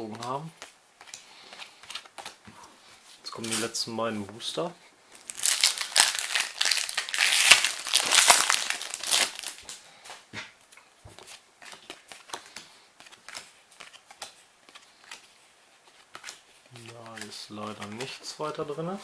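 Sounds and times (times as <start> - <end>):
foil wrapper tearing and crinkling: 5.3 - 9.7.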